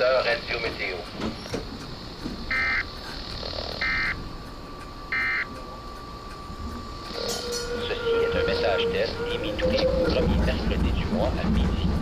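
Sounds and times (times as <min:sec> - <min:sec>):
two-tone warbling data bursts: 0:02.5 - 0:04.2, 0:06.5 - 0:11.8.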